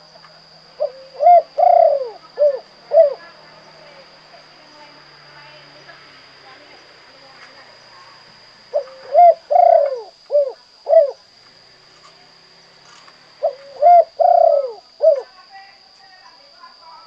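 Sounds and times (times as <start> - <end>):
dove cooing: 0.0 - 4.6, 8.1 - 11.3, 13.4 - 15.4.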